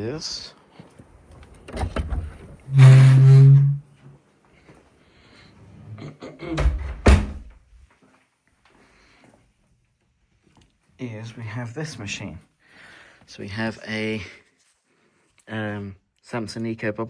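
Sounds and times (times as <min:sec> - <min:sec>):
knocks and thuds of handling: 0:06.6 - 0:07.6.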